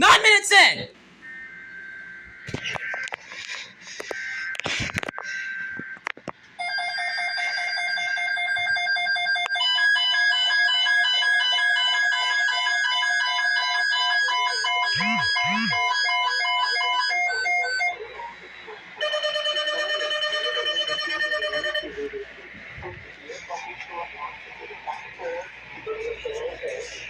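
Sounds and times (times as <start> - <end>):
different alert tone: 14.9 - 15.8
electronic alert tone pulsing: 14.9 - 15.9.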